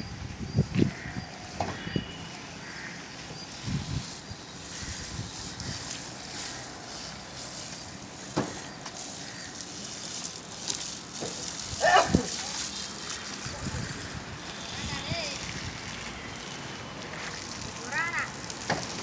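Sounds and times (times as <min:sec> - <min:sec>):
water spraying on concrete: 0:00.1 - 0:19.0.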